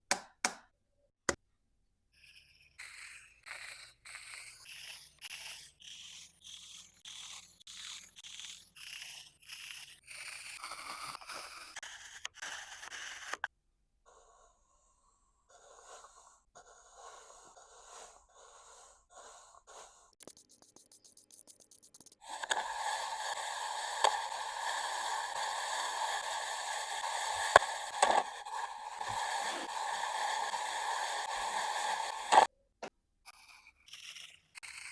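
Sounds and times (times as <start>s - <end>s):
tool slicing sand: 15.6s - 32.5s.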